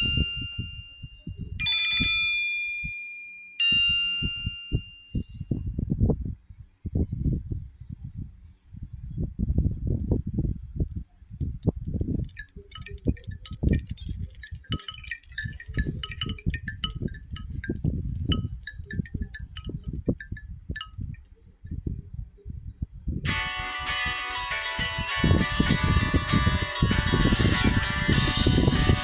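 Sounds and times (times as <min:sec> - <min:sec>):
wind-chime phone ringtone: 0:00.0 - 0:05.4, 0:10.1 - 0:21.7, 0:23.3 - 0:29.0.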